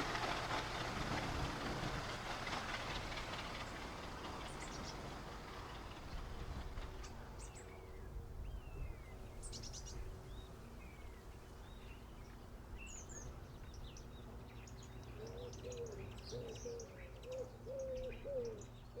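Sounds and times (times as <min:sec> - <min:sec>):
small birds chirping: 0:03.6 - 0:06.2.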